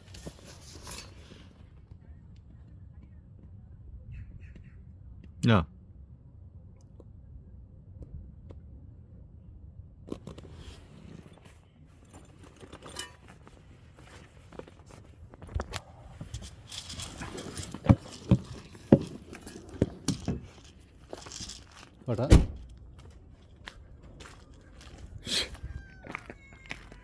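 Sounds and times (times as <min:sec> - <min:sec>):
cat food bag rustling: 0:16.2 - 0:22.0.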